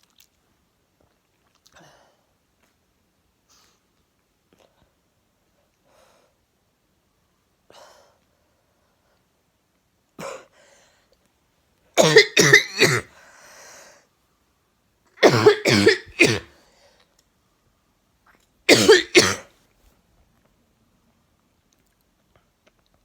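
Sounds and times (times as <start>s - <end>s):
woman coughing: 12.0s - 13.1s, 15.2s - 16.5s, 18.7s - 19.4s.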